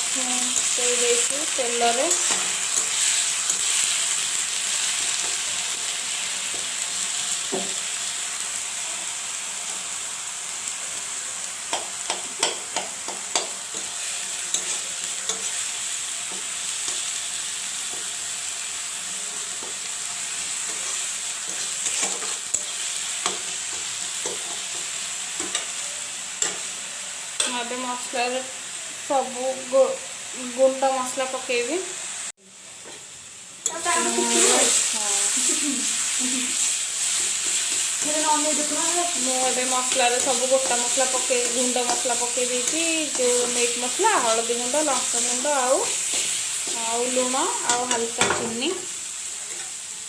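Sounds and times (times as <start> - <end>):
masala paste sizzling in oil: 0.0 - 50.0
spatula tapping and scraping pan: 11.7 - 15.6, 20.7 - 25.7, 47.6 - 48.6.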